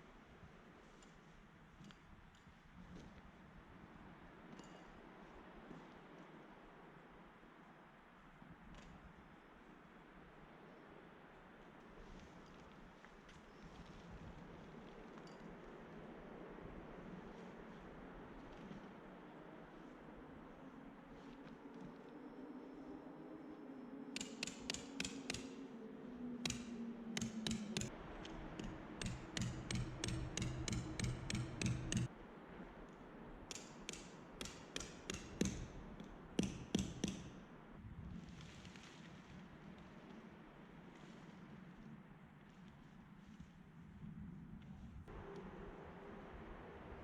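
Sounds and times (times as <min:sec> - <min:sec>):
faint light ticks: 0:00.9 - 0:03.2
low sustained tone: 0:19.2 - 0:32.1
sharp ticking clicks: 0:24.2 - 0:25.7, 0:26.4 - 0:27.9, 0:28.6 - 0:32.1.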